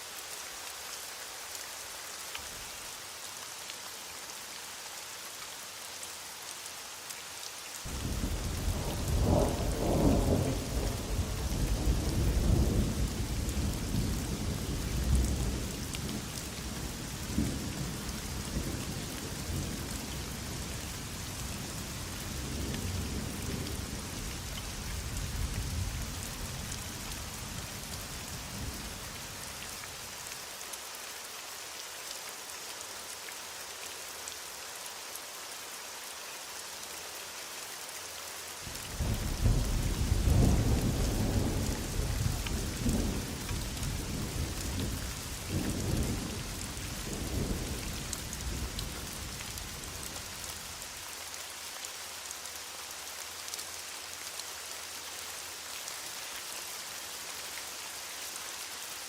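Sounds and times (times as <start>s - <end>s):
heavy rain hissing: 0.0s - 59.0s
thunder rumbling: 7.9s - 13.7s.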